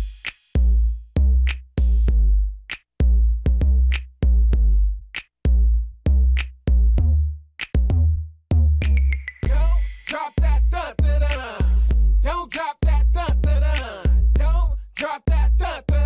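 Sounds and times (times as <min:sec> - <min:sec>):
drum machine claps: 0:00.0 - 0:08.0, 0:08.8 - 0:10.6, 0:11.2 - 0:16.0
deep bass hits: 0:03.0 - 0:14.6.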